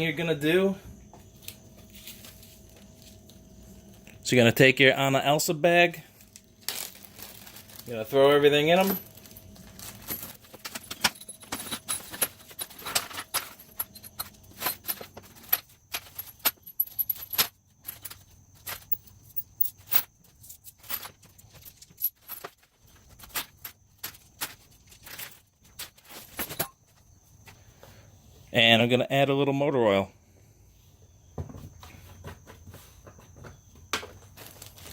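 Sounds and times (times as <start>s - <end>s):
metal nuts and bolts clinking: 6.3s - 26.9s.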